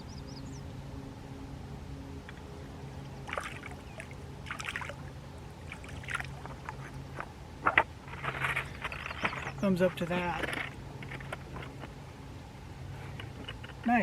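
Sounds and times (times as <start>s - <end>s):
faint low hum: 0.0s - 14.0s
water splashing and dribbling: 3.2s - 9.3s.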